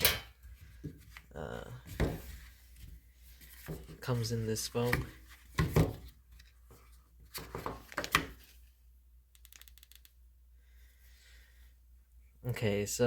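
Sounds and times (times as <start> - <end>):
small clicks: 9.3 - 10.2.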